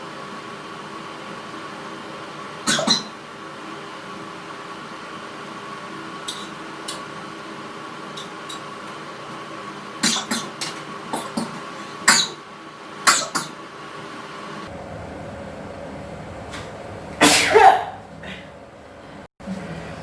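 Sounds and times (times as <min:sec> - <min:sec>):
steady hum: 0:00.0 - 0:20.0
person coughing: 0:02.6 - 0:03.1, 0:10.0 - 0:12.4, 0:13.1 - 0:13.6, 0:17.2 - 0:18.5.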